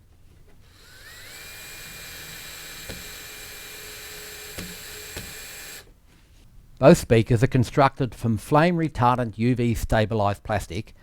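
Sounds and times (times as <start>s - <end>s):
power drill whining: 0.6s - 5.9s.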